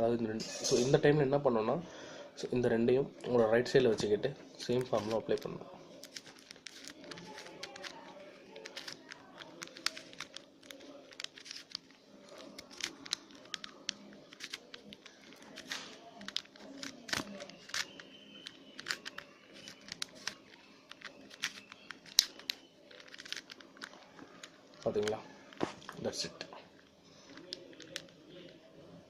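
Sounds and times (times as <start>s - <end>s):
puzzle cube clicking and rattling: 4.7s - 25.9s, 26.8s - 28.7s.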